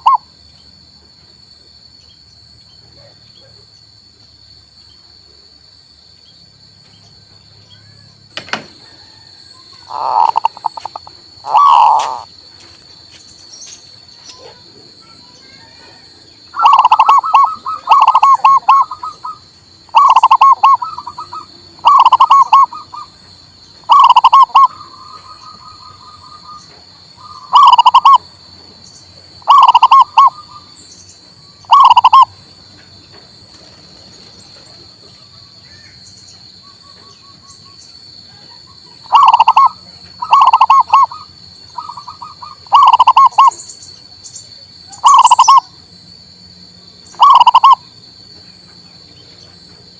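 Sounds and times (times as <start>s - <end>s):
dove cooing: 0.0s - 0.2s, 9.0s - 12.3s, 16.6s - 23.2s, 23.8s - 28.2s, 29.4s - 30.6s, 31.7s - 32.3s, 38.4s - 43.6s, 44.9s - 45.7s, 47.2s - 47.8s.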